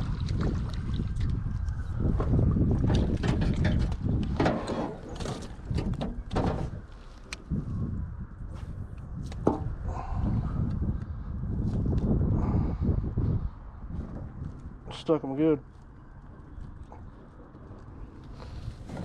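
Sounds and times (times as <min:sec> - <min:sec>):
wind buffeting microphone: 0:00.0 - 0:19.0
handling knocks and clatter: 0:02.8 - 0:06.9.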